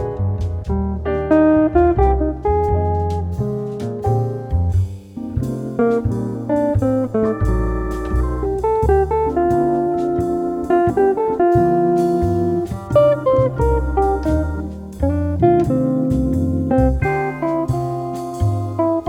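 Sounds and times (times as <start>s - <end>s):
plucked jazz guitar: 0.0s - 19.0s
walking bass line: 0.0s - 19.0s.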